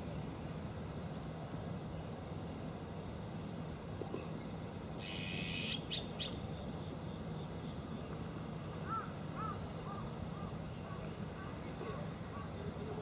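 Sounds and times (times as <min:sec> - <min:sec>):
magpie harsh raspy call: 0:05.0 - 0:06.4.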